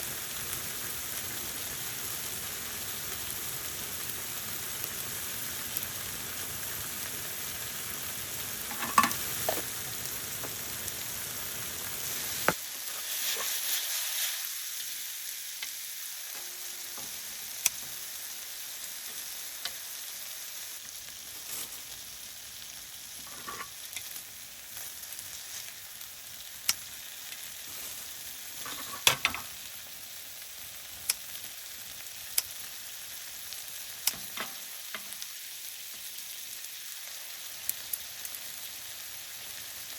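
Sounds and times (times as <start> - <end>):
food sizzling in a pan: 0.0 - 39.9
utensils knocking against pan: 8.7 - 9.6, 28.6 - 29.5.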